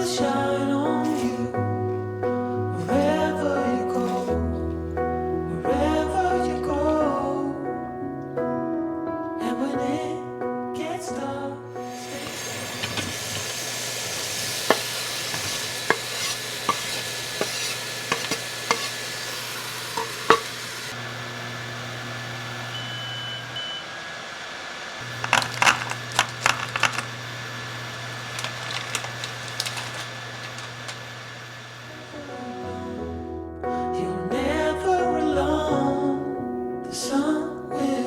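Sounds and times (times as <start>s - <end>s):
food sizzling in a pan: 2.9s - 4.4s, 11.9s - 33.0s
utensil scraping a pan: 2.9s - 4.5s, 12.0s - 21.0s, 28.2s - 31.2s.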